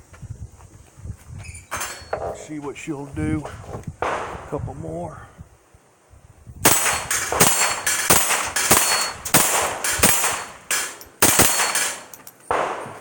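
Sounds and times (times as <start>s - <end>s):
rifle shots: 4.0s - 4.5s, 6.6s - 13.0s
steel target ringing: 6.7s - 9.3s.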